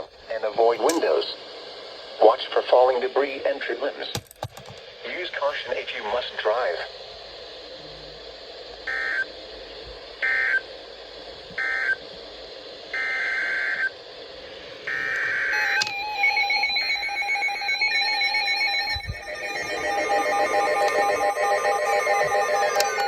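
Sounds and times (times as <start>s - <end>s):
buzzy data bursts: 12.8s - 23.0s
dual-tone attention signal: 14.9s - 23.0s.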